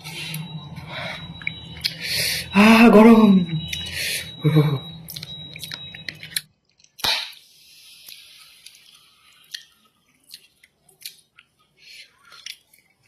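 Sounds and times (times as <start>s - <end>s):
chewing noodles with mouth clicks: 8.0s - 11.6s, 12.2s - 13.0s.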